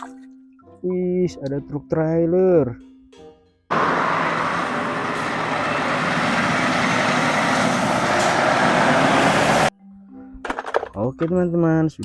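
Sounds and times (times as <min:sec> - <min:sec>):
heavy truck running: 0:03.7 - 0:09.7.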